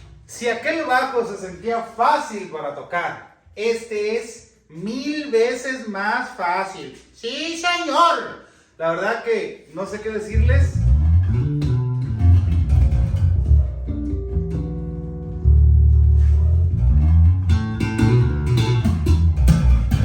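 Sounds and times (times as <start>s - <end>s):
electric bass plucked notes: 10.3s - 20.0s.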